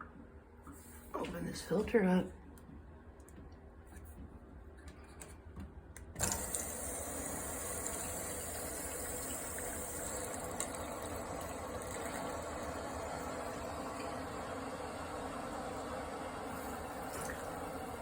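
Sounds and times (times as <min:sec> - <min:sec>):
water rushing through pipes: 0:06.2 - 0:18.0.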